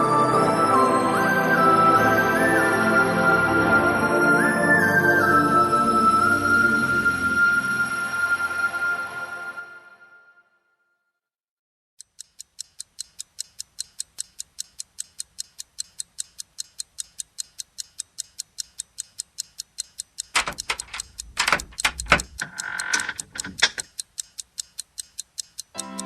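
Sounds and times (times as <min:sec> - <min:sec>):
clock ticking: 0:12.0 - 0:26.0.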